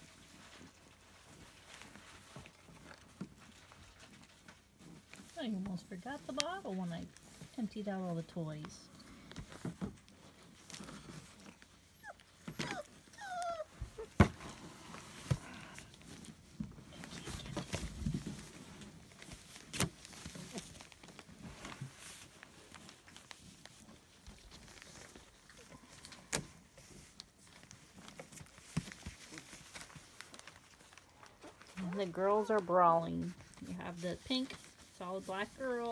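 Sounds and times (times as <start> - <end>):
soft rustling and scuffling: 0.0 - 35.9
puppies whining: 11.0 - 14.2.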